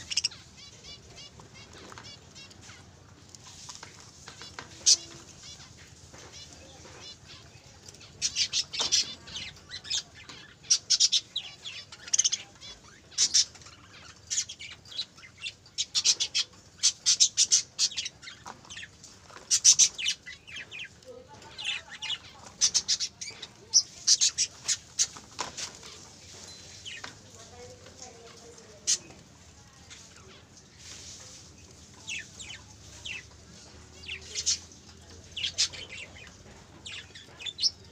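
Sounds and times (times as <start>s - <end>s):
budgerigars chirping: 0.0s - 2.8s, 8.0s - 26.0s, 32.0s - 37.9s.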